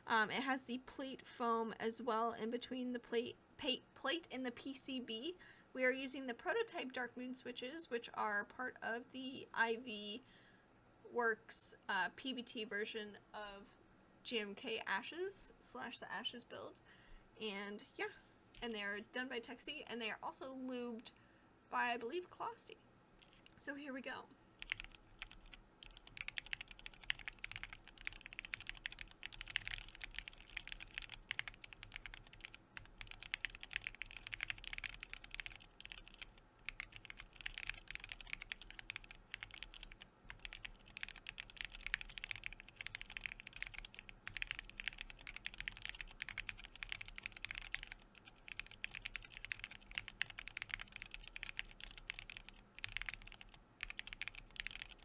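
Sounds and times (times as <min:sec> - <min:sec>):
mechanical keyboard typing: 0:24.6 - 0:55.0.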